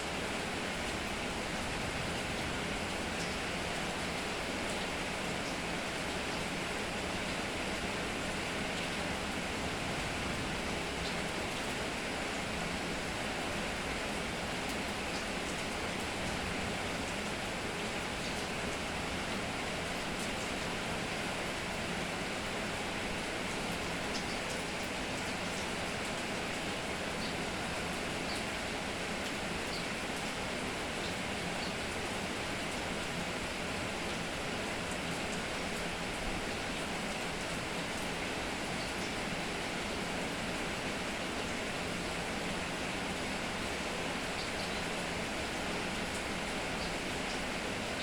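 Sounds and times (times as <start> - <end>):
steady rain hiss: 0.0 - 48.0
faint raindrop ticks: 14.6 - 17.3, 23.5 - 28.6, 46.0 - 47.5.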